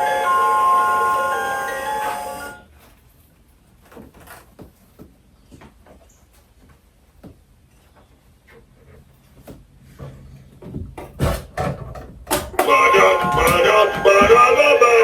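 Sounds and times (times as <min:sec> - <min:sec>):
chiming music-box tune: 0:00.0 - 0:02.6, 0:12.7 - 0:15.0.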